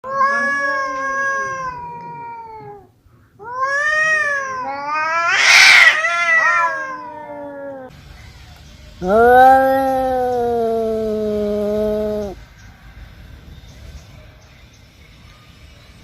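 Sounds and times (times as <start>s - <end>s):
cats yowling: 0.0s - 7.9s, 9.0s - 12.4s
cat hissing: 0.2s - 7.9s, 9.0s - 12.4s.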